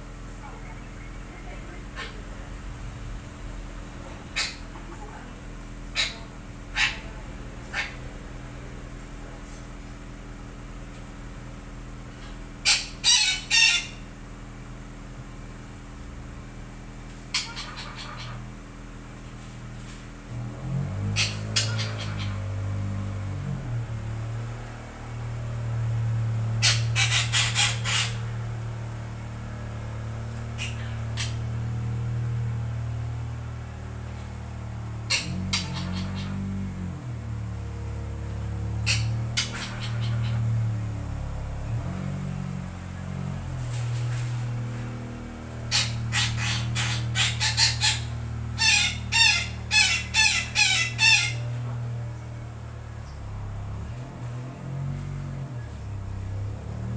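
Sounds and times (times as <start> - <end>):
steady low hum: 0.0 - 56.9
parakeet squawks: 1.8 - 2.4, 4.2 - 4.8, 5.9 - 8.1, 12.2 - 14.0, 17.3 - 18.5, 21.2 - 22.5, 26.6 - 28.4, 30.5 - 31.6, 35.0 - 37.0, 38.8 - 40.7, 45.6 - 51.7.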